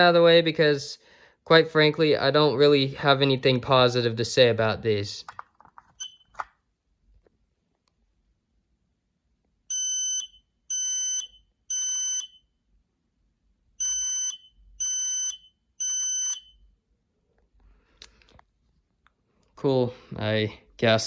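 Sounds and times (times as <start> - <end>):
smoke alarm beeps: 6.0 - 6.3, 9.7 - 12.6, 13.8 - 16.7.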